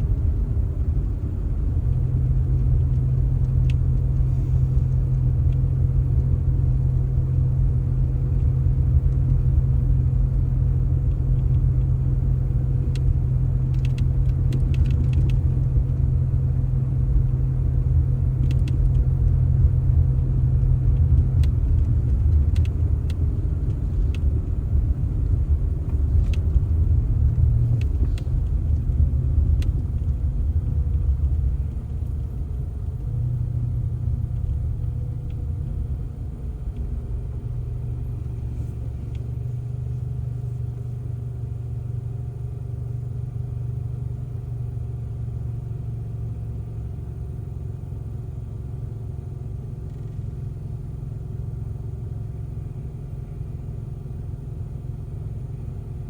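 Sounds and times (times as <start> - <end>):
motor vehicle rumble: 0.0 - 56.0
faint clicks: 39.0 - 39.3.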